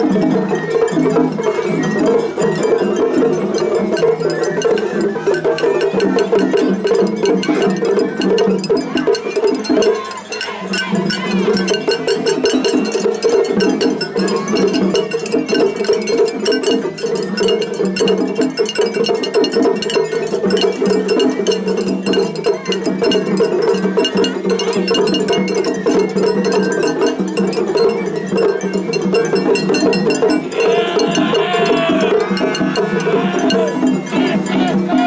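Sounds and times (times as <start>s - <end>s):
taiko drums beating: 10.8s - 35.0s
flute tones: 29.9s - 35.0s.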